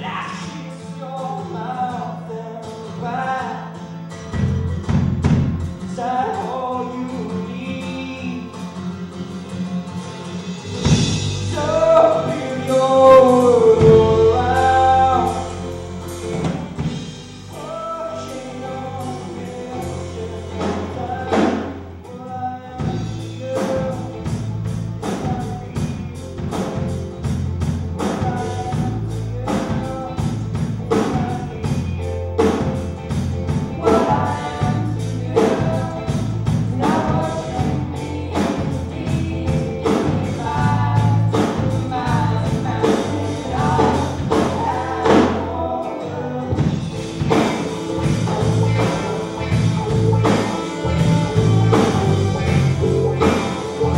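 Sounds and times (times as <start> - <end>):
music with singing voices: 0.0 - 53.9
steady drum beat: 10.2 - 21.8, 22.8 - 45.6, 46.5 - 53.9.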